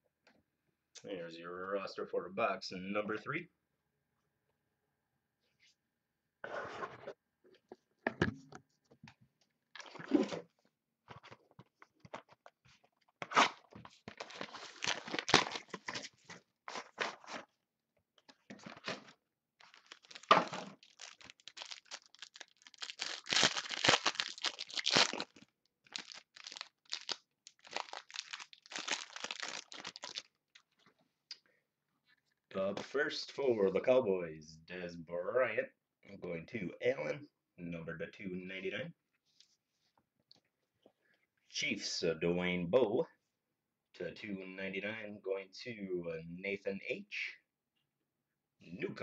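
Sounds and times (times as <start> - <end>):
wrapper crinkling and tearing: 13.3 - 17.3, 18.7 - 30.4.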